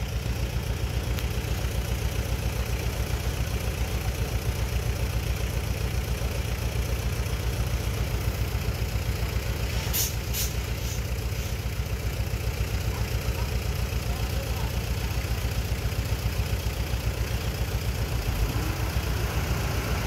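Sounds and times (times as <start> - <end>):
diesel engine running: 0.0 - 20.0
short hisses: 9.6 - 11.6.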